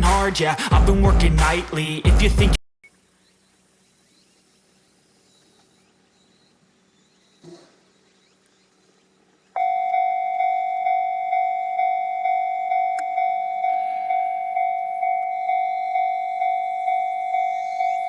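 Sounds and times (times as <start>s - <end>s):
level crossing bell ringing: 9.6s - 18.0s.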